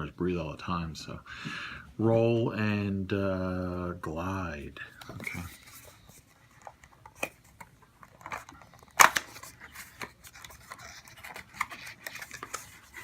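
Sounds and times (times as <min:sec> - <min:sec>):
box packaging clicks and rustles: 0:04.9 - 0:13.0.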